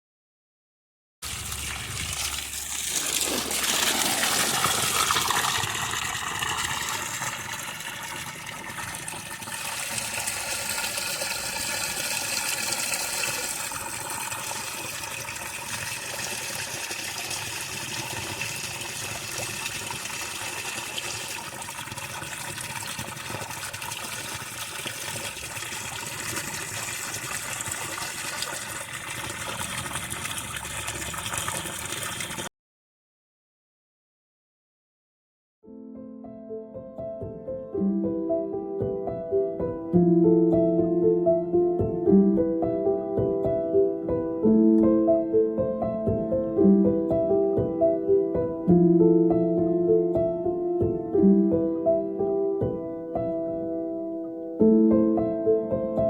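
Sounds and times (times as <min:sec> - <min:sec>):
water gushing into tank: 0:01.2 - 0:32.5.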